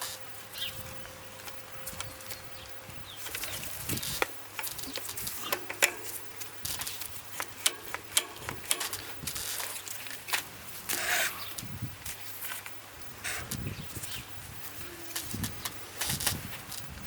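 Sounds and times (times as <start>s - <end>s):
sharp clicks and light knocks: 3.2s - 11.0s.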